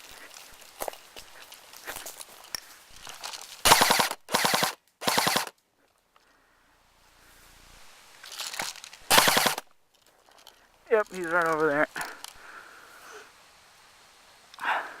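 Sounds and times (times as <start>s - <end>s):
airsoft gun full-auto bursts: 3.6s - 5.6s, 9.1s - 9.7s.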